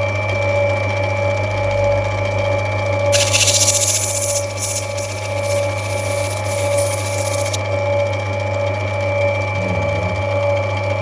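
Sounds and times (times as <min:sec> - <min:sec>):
stone grinding hiss: 0:03.1 - 0:07.6
grinding wheel motor hum: 0:03.2 - 0:07.6.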